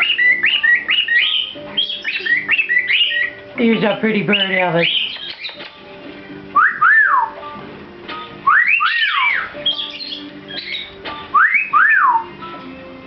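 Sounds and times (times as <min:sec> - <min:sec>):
cockatiel whistling: 0:00.0 - 0:03.5, 0:04.3 - 0:05.6, 0:06.6 - 0:07.4, 0:08.4 - 0:12.3
soft high chirps: 0:08.5 - 0:12.3.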